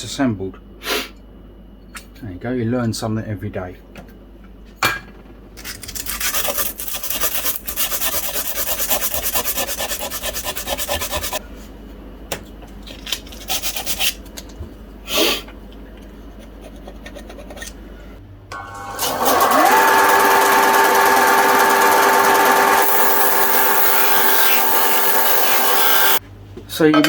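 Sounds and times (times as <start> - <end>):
sanding metal window frame: 20.0 - 26.2.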